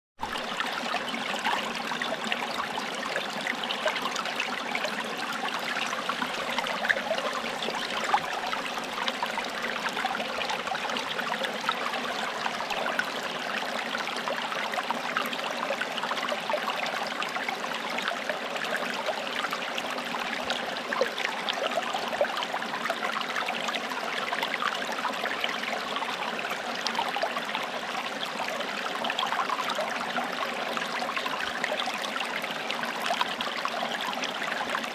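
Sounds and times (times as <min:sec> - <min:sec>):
stream babbling over stones: 0:00.2 - 0:34.9.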